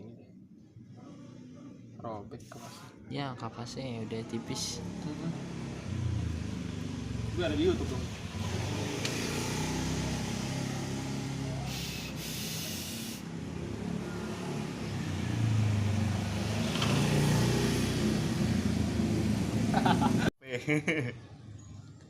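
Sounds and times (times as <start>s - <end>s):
traffic engines running: 2.9s - 20.3s
hiss: 11.6s - 13.3s.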